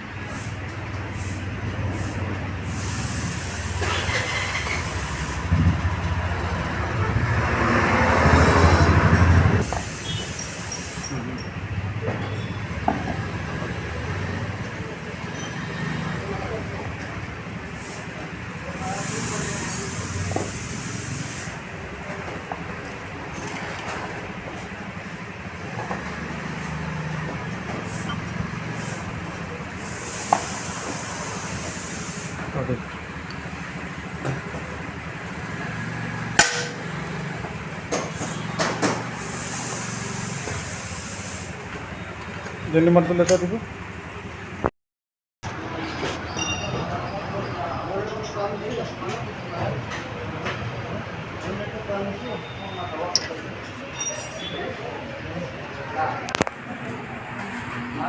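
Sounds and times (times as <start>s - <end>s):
vehicle engine rumbling: 0.0s - 20.7s
air hissing: 0.2s - 5.6s, 9.6s - 11.5s, 17.7s - 21.7s, 27.8s - 32.6s, 38.0s - 41.7s.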